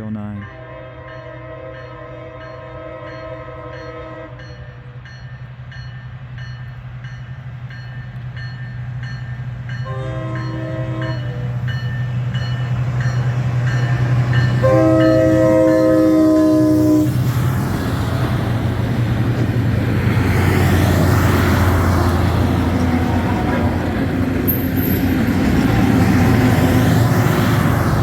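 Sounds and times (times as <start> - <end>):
multi-note air horn blasts: 14.6 - 17.2.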